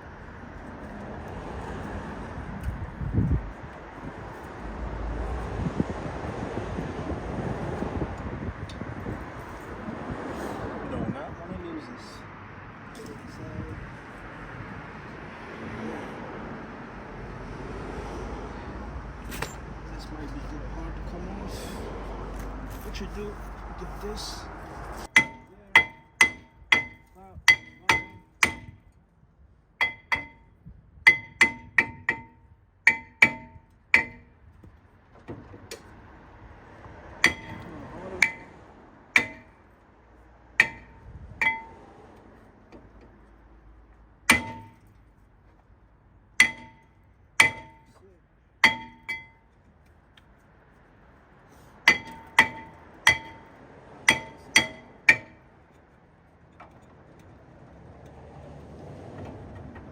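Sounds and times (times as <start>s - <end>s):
hammer ringing on metal rotor: 25.1s - 28.8s, 29.8s - 30.5s, 31.1s - 34.3s, 37.2s - 38.5s, 39.2s - 39.6s, 40.6s - 41.8s, 44.3s - 44.8s, 46.4s - 47.9s, 48.6s - 49.4s, 51.9s - 55.4s.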